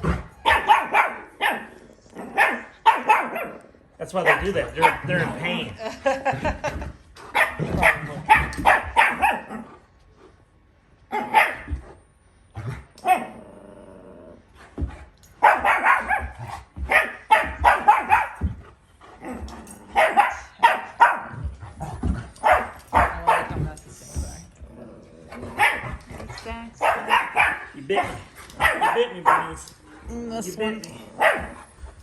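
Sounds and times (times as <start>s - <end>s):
dog barking: 0.4s - 3.6s, 4.2s - 5.3s, 7.3s - 9.7s, 11.1s - 11.8s, 13.0s - 13.3s, 15.4s - 18.5s, 19.9s - 24.4s, 25.5s - 26.0s, 26.8s - 29.7s, 31.0s - 31.6s
dog growling: 3.3s - 6.8s, 12.5s - 14.8s, 19.0s - 20.6s, 21.3s - 27.4s, 28.0s - 31.6s.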